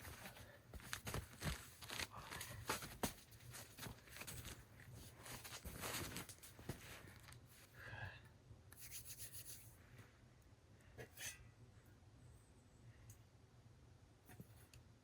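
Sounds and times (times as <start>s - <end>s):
faint rustling and scraping: 0.0s - 7.8s.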